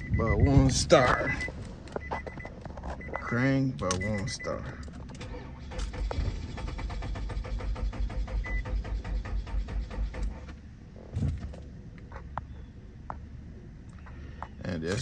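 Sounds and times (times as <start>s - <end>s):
car engine cranking: 0.0s - 12.2s
thump: 11.1s - 11.6s.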